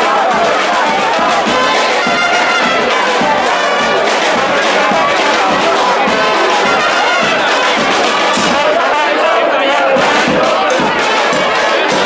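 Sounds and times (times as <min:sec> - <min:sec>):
percussion beat: 0:00.0 - 0:12.0
trumpets and trombones: 0:00.0 - 0:12.0.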